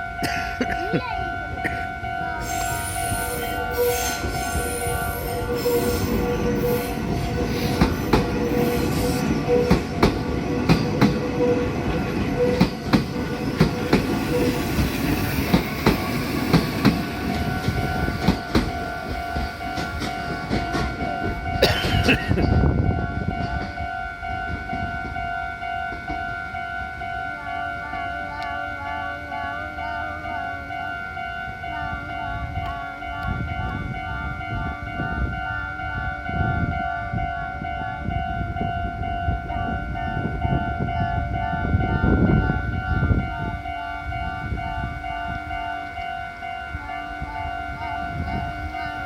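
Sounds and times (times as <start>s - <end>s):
two-tone crossing bell: 0.0s - 49.0s
train wheels clacking over rail joints: 7.3s - 11.3s, 12.3s - 22.1s.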